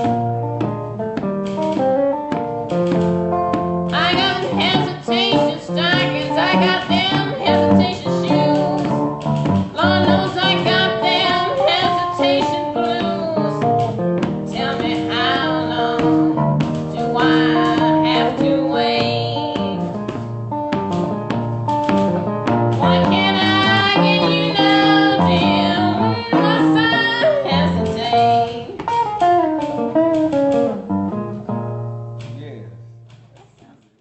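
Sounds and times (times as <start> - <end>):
acoustic guitar: 0.0 - 33.8
woman singing blues: 3.3 - 20.0, 22.8 - 29.0.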